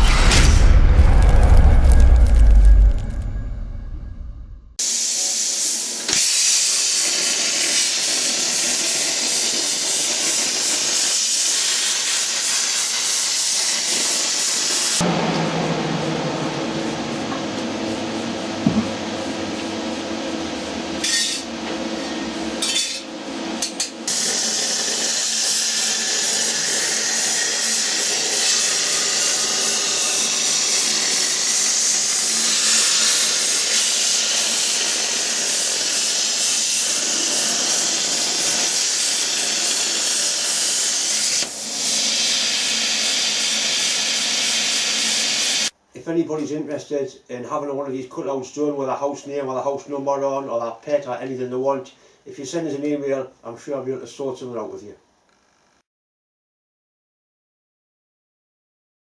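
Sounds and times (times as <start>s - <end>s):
plasma cutter hissing: 4.8s - 15.0s, 24.1s - 45.7s.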